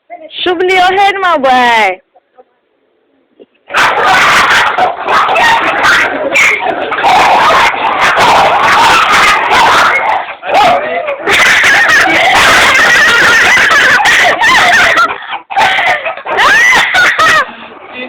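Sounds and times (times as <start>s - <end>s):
dogs barking and yelping: 3.6s - 17.7s.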